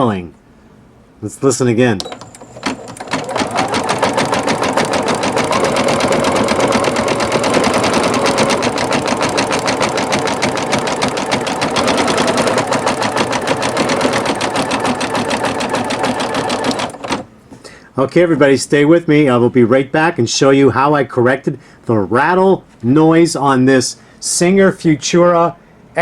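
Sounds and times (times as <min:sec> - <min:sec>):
sewing machine stitching rapidly: 0:02.0 - 0:17.3.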